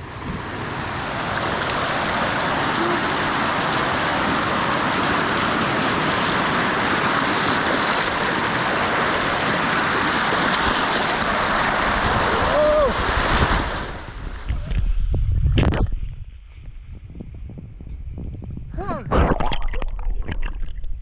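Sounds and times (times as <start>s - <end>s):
waterfall rushing over rock: 0.0s - 14.9s.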